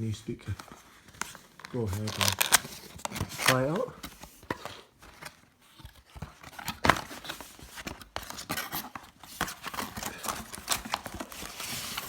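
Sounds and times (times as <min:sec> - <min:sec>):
packaging rustling: 0:00.4 - 0:12.0.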